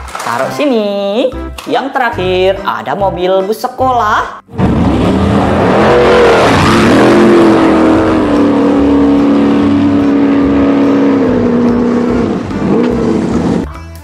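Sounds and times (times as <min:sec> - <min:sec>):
vehicle engine droning: 0:04.5 - 0:13.7.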